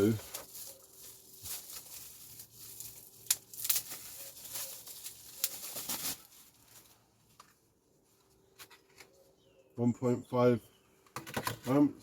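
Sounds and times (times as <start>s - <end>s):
plastic packaging rustling: 0.0s - 7.4s.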